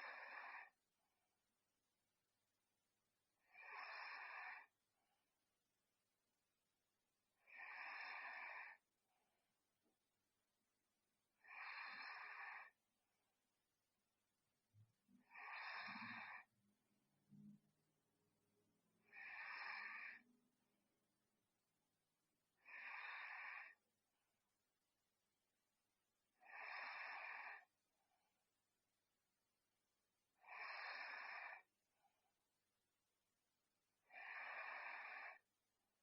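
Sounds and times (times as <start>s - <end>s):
person breathing softly in sleep: 0.0s - 0.8s, 3.4s - 4.8s, 7.4s - 8.9s, 11.4s - 12.8s, 15.1s - 16.6s, 19.0s - 20.4s, 22.6s - 23.8s, 26.3s - 27.8s, 30.3s - 31.7s, 34.0s - 35.5s.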